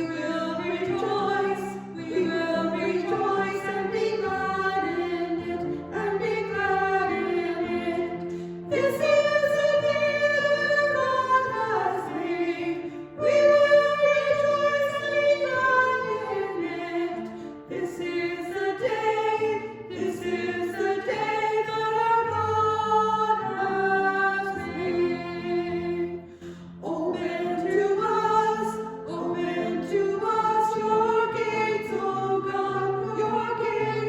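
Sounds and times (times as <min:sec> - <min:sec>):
choir singing a hymn: 0:00.0 - 0:34.0.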